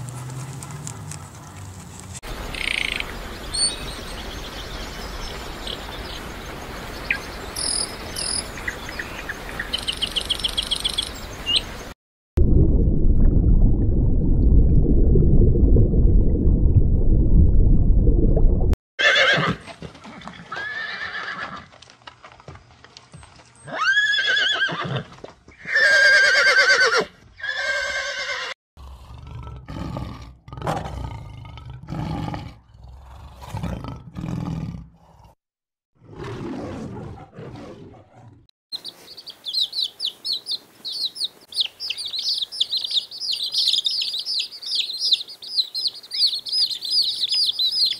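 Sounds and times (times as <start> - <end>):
loud low rumbling noise: 12.4 - 18.7
horse whinnying: 19.0 - 19.6, 20.5 - 21.7, 23.7 - 28.6.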